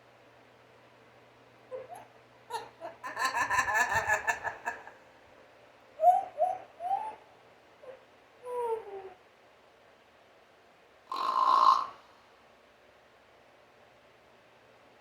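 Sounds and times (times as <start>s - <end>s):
parrot chattering: 1.7s - 5.0s.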